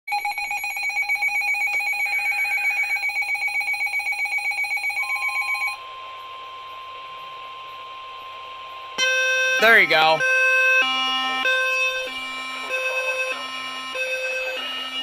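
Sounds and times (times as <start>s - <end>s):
steady warning tone: 0.1s - 15.0s
warbling electronic alarm: 0.1s - 15.0s
radio hiss: 9.6s - 10.2s.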